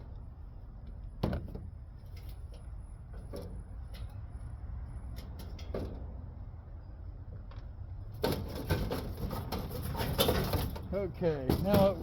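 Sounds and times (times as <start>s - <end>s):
light clicks of metal parts: 1.9s - 6.2s.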